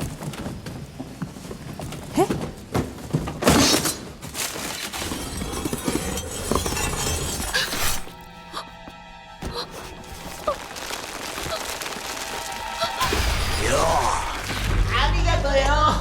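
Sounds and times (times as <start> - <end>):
loud crash: 10.8 - 15.2.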